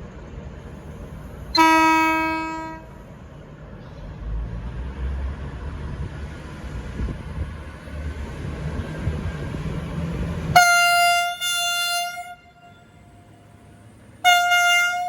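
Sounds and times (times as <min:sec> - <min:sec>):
diesel engine rumble: 0:00.0 - 0:15.0
train horn blast: 0:01.5 - 0:03.0, 0:10.5 - 0:13.2, 0:14.2 - 0:15.0.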